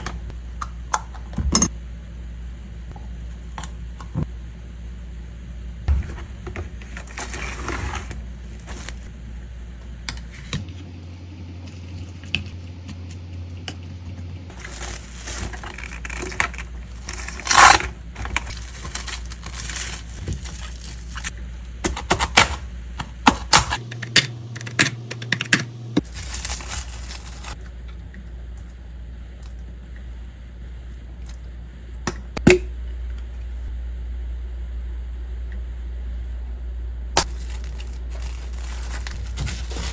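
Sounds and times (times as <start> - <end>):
low appliance hum: 0.0 - 39.9.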